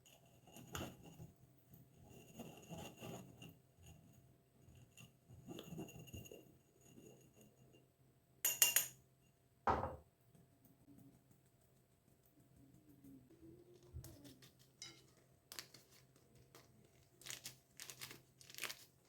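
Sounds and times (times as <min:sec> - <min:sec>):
utensil scraping bowl: 0:00.0 - 0:07.8
dull knock: 0:09.7 - 0:10.0.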